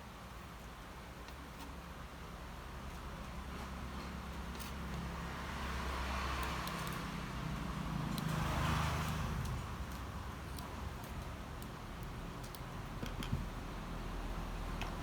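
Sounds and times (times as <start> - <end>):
motor vehicle passing: 5.0 - 10.3.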